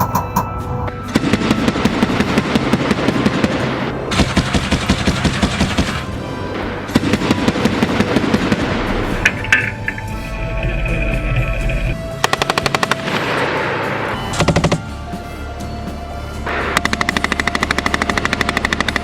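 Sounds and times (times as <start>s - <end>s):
automatic cannon and machine gun fire: 1.1s - 6.2s, 6.9s - 9.8s, 14.4s - 14.9s, 16.8s - 19.0s.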